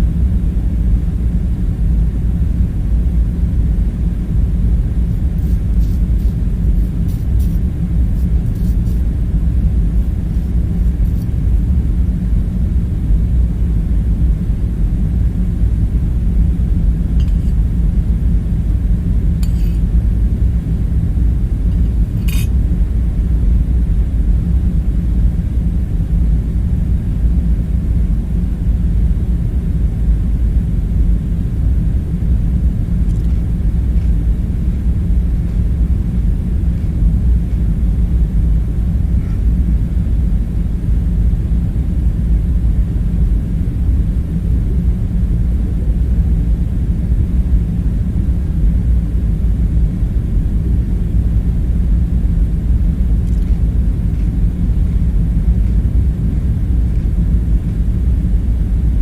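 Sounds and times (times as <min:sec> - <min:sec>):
low rumbling hum: 0:00.0 - 0:59.0.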